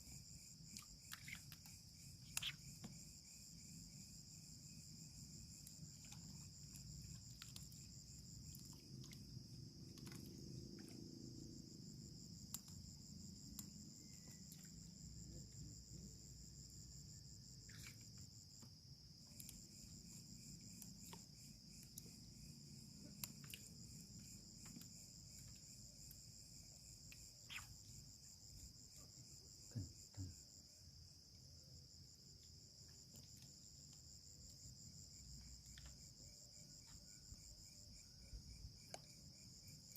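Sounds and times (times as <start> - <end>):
insects chirring: 0.0 - 39.9.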